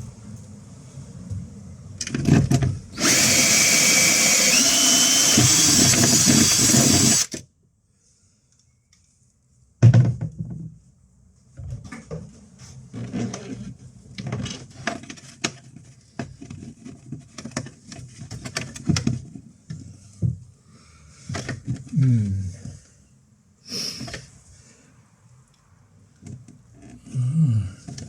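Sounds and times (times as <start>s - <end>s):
knocks and clicks of handling wires: 14.2s - 20.4s.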